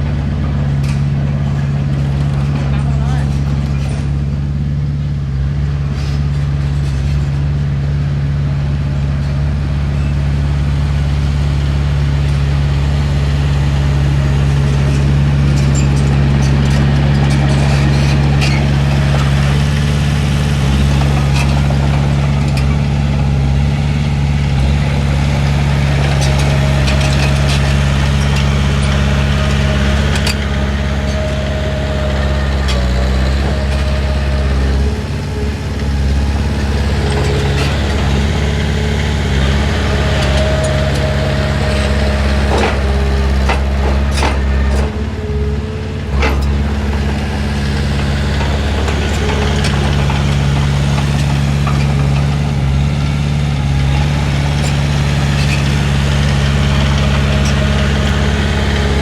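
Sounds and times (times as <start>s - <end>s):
diesel engine running: 0.0s - 59.0s
clanks and knocks: 14.5s - 23.4s, 24.5s - 59.0s.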